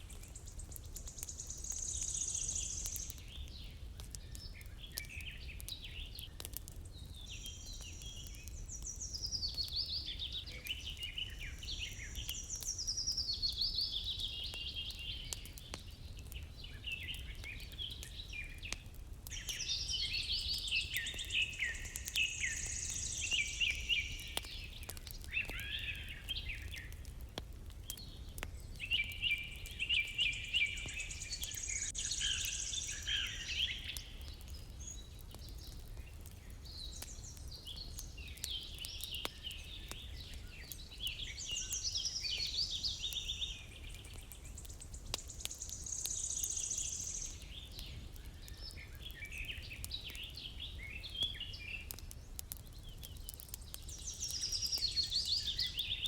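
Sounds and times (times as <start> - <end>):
songbirds singing and chirping: 0.0 - 56.0
faint clicks: 43.9 - 46.2.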